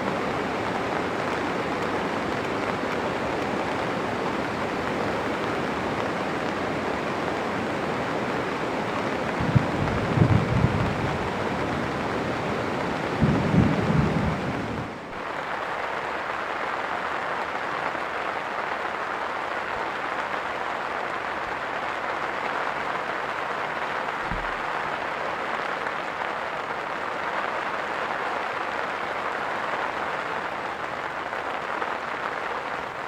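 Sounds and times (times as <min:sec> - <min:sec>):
heavy rain falling: 0:00.0 - 0:33.0
low rumbling gusts: 0:09.4 - 0:14.9
low thump: 0:24.3 - 0:24.6.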